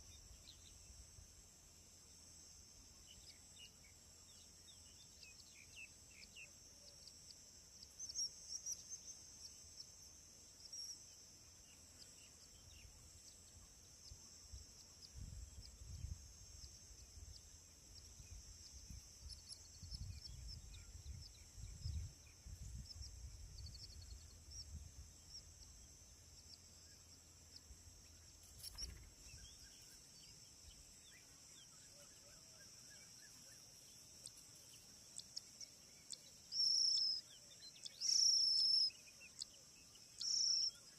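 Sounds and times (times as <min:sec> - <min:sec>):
faint bird chirps: 0:00.0 - 0:40.9
insects droning: 0:00.0 - 0:40.9
wind on microphone rumble: 0:19.7 - 0:25.1.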